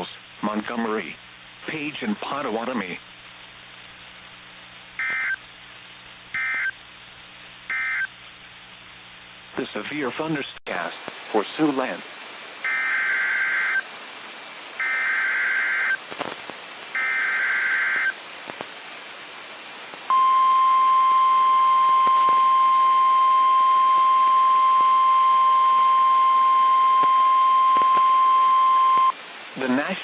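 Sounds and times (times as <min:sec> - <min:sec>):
screeching digital code bursts: 0:07.7 - 0:08.1, 0:12.7 - 0:13.8, 0:14.8 - 0:16.0, 0:17.0 - 0:18.1
steady warning alarm tone: 0:12.6 - 0:13.8, 0:14.8 - 0:16.0, 0:17.0 - 0:18.1.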